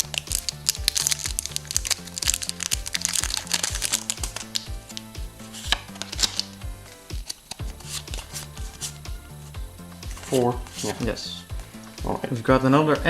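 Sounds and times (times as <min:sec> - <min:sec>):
foil wrapper crinkling and tearing: 0:00.0 - 0:09.1
music with steady beat: 0:00.0 - 0:13.0.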